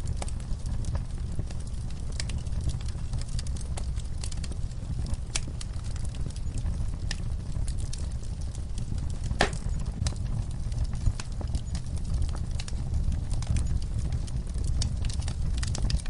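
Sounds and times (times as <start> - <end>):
fire crackling and snapping: 0.0 - 16.0
fire rumbling: 0.0 - 16.0
loud fire pop: 9.3 - 9.8.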